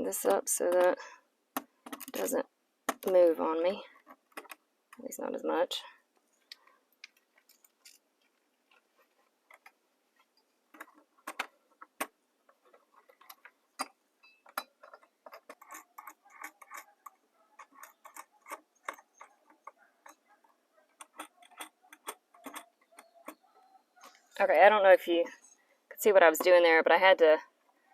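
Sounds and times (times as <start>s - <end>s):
screwdriver clicking on metal lamp: 13.0s - 20.2s, 21.0s - 23.5s.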